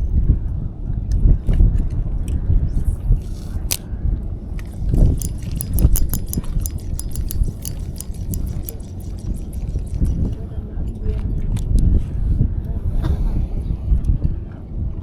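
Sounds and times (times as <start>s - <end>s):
fishing reel clicking: 2.8s - 3.9s, 4.6s - 10.4s.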